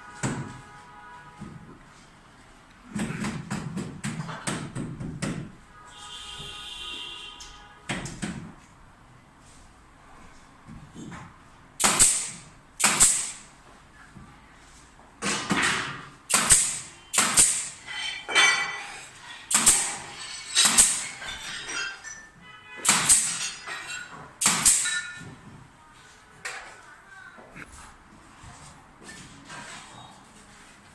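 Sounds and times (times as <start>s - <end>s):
hammer blows ringing: 19.5s - 23.8s.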